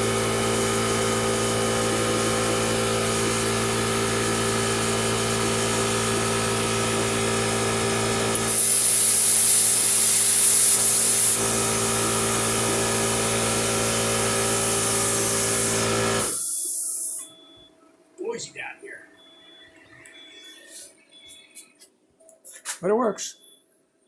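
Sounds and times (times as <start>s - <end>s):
plasma cutter hum and hiss: 0.0s - 17.3s
torch cutting hiss: 0.3s - 17.3s.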